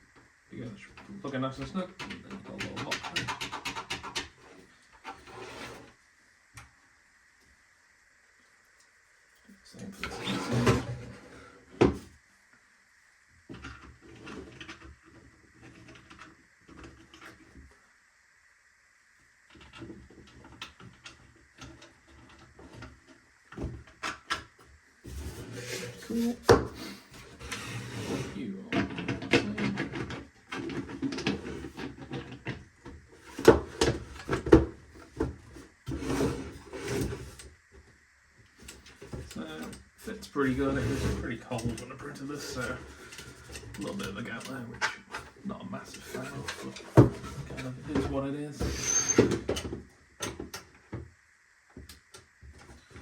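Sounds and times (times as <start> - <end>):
plastic parts rubbing: 25.1 - 37.4.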